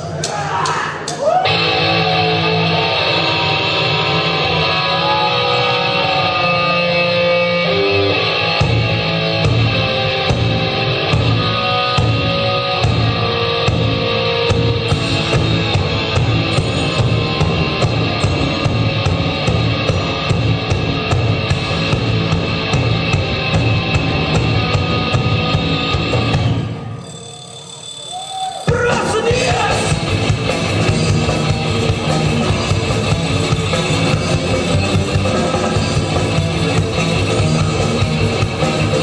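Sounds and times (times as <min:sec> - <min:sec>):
heavy rock electric guitar: 0:00.5 - 0:27.0, 0:28.6 - 0:39.0
drum kit steady beat: 0:28.7 - 0:39.0.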